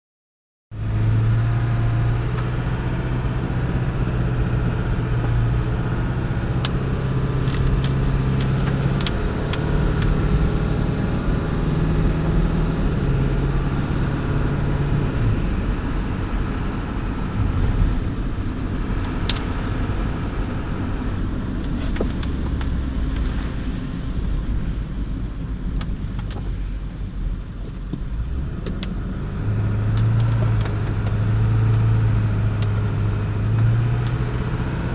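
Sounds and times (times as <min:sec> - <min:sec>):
road noise: 0:00.7 - 0:34.9
vehicle engine hum: 0:00.7 - 0:34.9.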